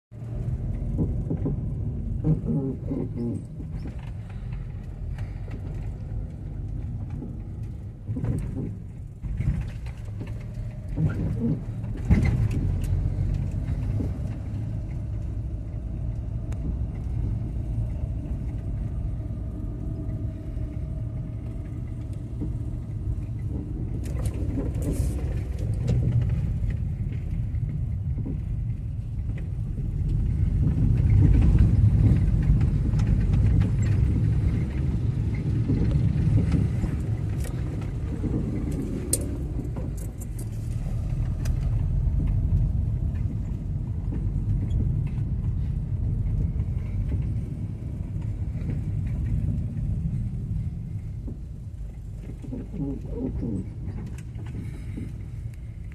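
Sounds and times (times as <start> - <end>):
car driving rumble: 0.1 - 55.9.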